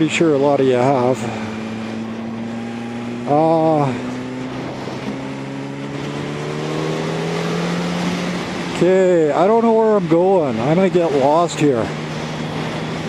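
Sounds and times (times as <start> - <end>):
motorcycle engine cruising: 0.0 - 13.0
wind noise: 4.2 - 8.8.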